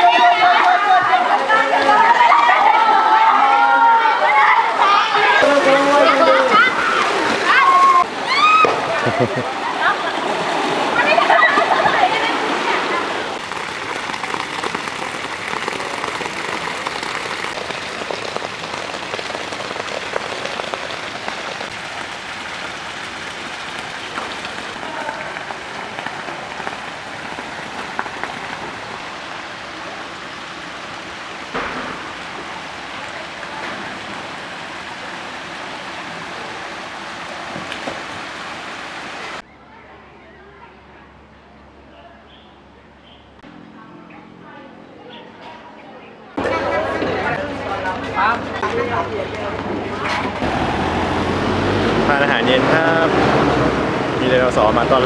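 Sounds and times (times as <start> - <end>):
water hissing and pattering: 4.3 - 39.4.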